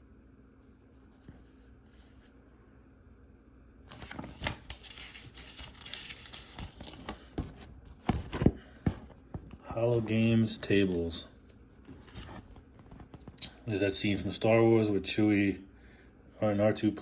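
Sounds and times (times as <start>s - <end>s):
magazine pages rustling: 3.9s - 11.2s, 11.8s - 13.4s.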